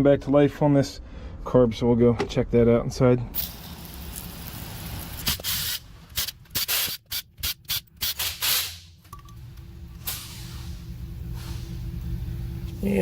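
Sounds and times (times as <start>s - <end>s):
short hissing spray bursts: 5.3s - 7.0s, 10.0s - 11.8s.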